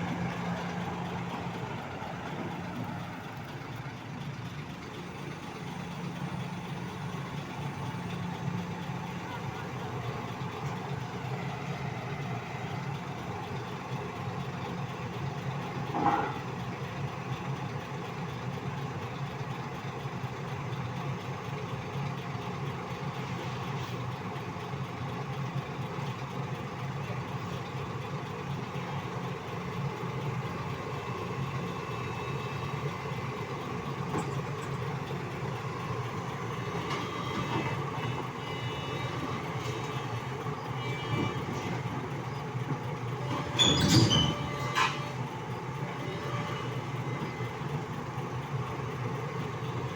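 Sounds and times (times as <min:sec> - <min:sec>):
heavy diesel engine running: 0:00.0 - 0:49.9
loud squeal: 0:43.4 - 0:45.0
thin high squealing: 0:43.5 - 0:45.0.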